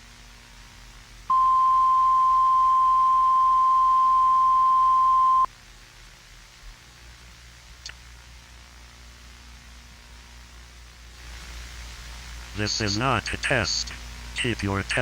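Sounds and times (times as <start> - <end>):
steady electronic beep tone: 1.3 - 5.5.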